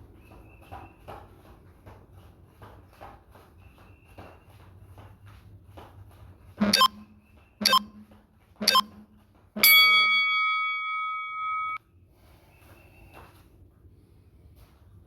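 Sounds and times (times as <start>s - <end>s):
long timer beep: 6.6s - 8.0s, 8.6s - 11.8s
short timer beeps: 6.6s - 8.0s, 8.6s - 11.8s.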